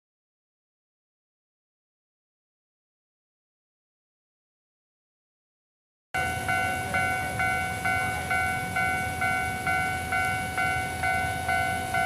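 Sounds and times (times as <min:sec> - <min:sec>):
level crossing warning bell ringing: 0:06.2 - 0:12.0.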